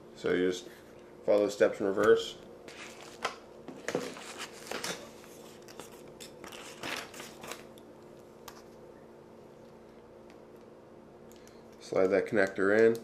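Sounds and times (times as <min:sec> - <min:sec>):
faint steady hum: 0:00.0 - 0:13.0
hands handling parts and tape: 0:01.3 - 0:08.8.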